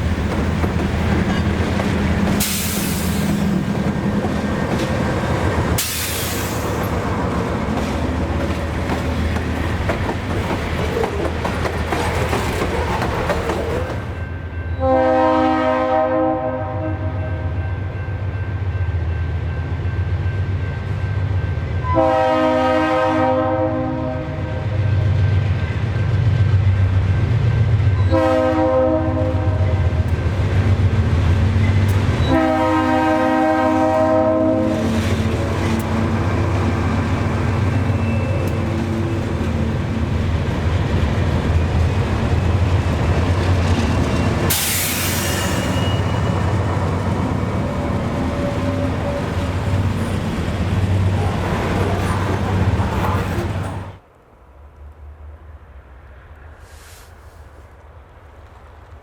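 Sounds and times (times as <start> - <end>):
locomotive engine rumble: 0.0 - 14.4, 29.4 - 54.0
train wheels on rails: 0.0 - 15.7, 24.6 - 59.0
locomotive air horn blasts: 14.8 - 17.6, 21.8 - 24.8, 28.1 - 29.8, 32.2 - 35.0.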